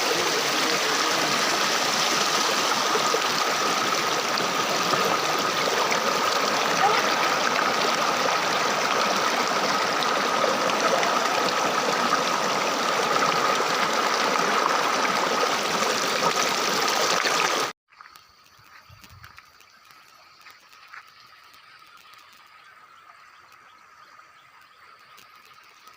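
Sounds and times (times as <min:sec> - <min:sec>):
waterfall rushing: 0:00.0 - 0:17.7.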